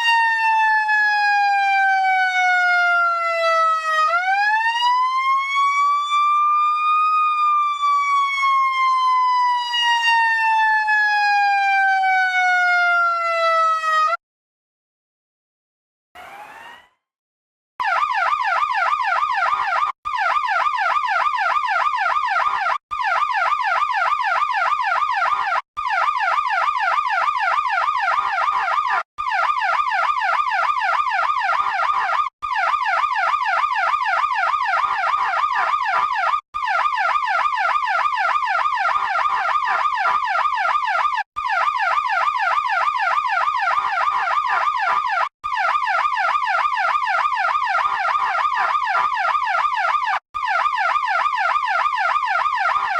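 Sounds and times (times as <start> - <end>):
electronic siren fast cycling tone: 16.2 - 17.0, 17.8 - 52.9.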